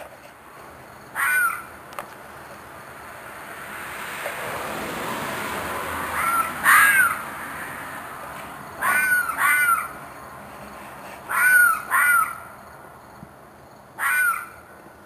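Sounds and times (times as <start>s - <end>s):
animal screeching calls: 1.2s - 1.7s, 6.0s - 7.9s, 8.8s - 10.0s, 11.3s - 12.5s, 14.0s - 14.6s.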